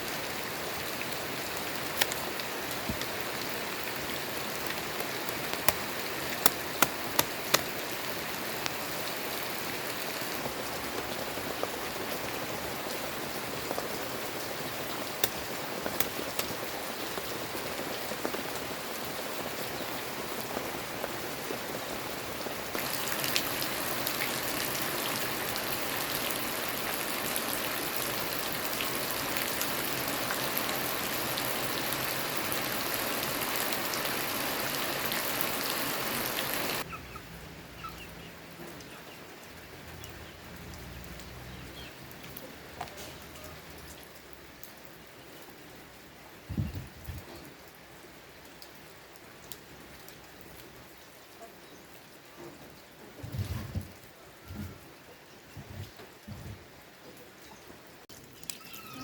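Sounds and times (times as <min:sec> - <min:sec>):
steady rain falling: 0:00.0 - 0:59.0
sharp raindrop hits: 0:04.3 - 0:08.9, 0:13.6 - 0:18.5, 0:22.7 - 0:36.8.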